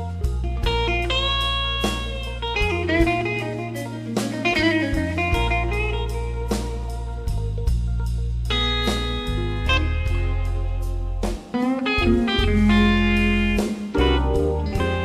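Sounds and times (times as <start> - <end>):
electric guitar lead bending notes: 0.0 - 7.6, 8.5 - 15.0
live blues band playing: 0.0 - 15.0.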